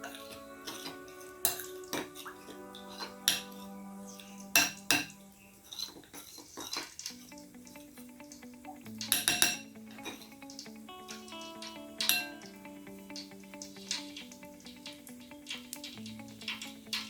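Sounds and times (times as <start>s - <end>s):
metal utensils clinking on dishes: 9.1s - 10.2s.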